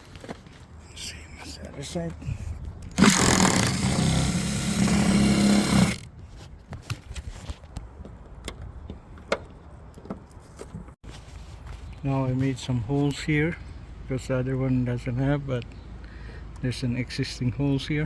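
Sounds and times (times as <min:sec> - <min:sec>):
power drill running: 0:02.9 - 0:06.1.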